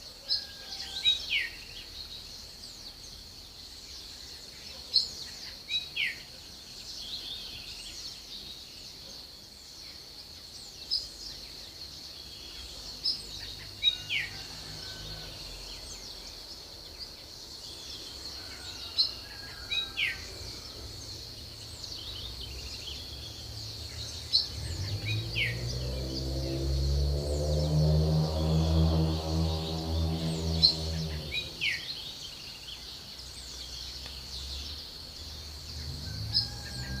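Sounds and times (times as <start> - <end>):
birds chirping: 0.0 - 37.0
high-pitched whine: 26.0 - 31.9.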